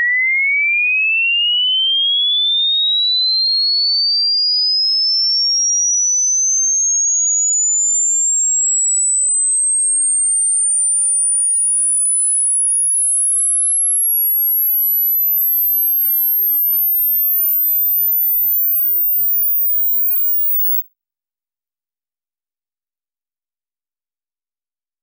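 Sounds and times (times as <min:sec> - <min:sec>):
sine tone sweeping upward: 0:05.7 - 0:20.8.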